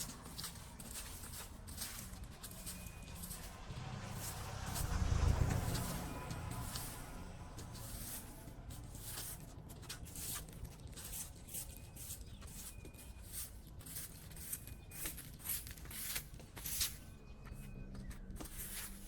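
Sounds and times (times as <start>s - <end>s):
low rumble: 2.6s - 9.5s.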